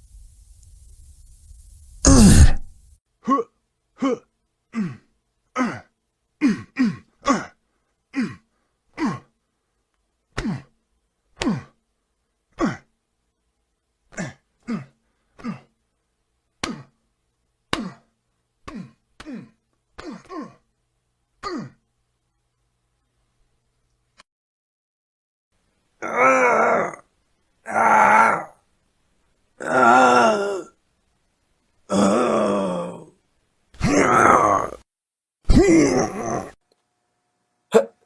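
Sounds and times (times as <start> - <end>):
man grunting: 2.1 - 4.2, 31.9 - 33.1, 33.8 - 34.8, 35.5 - 36.6.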